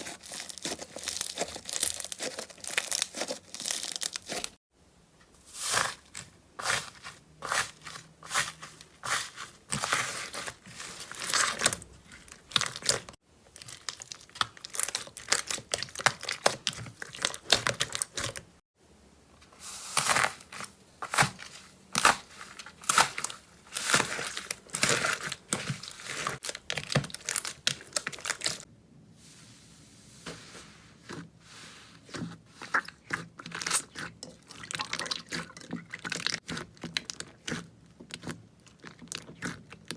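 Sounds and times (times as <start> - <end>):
slime squeezed and stretched: 0.0 - 4.6, 9.1 - 18.4, 32.1 - 39.9.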